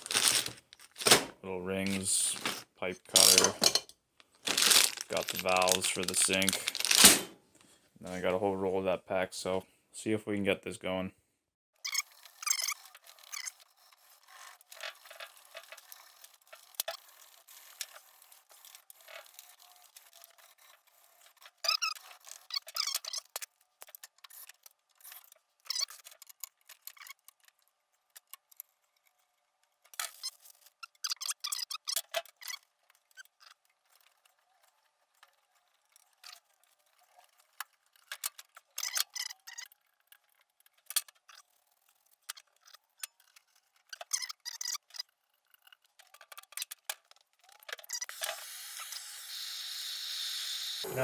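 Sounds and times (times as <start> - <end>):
tools and fittings clicking: 1.9 - 3.9
plumbing torch hissing: 48.2 - 51.0.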